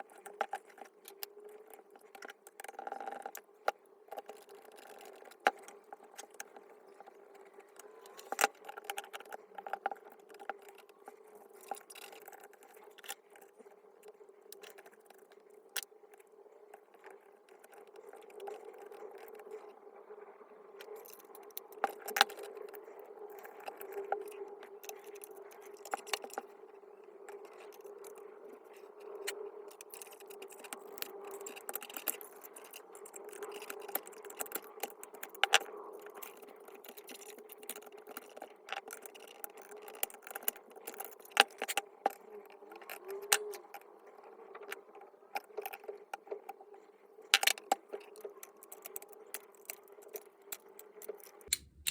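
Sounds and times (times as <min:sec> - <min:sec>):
metal parts and tools clinking: 0:51.2 - 0:51.9.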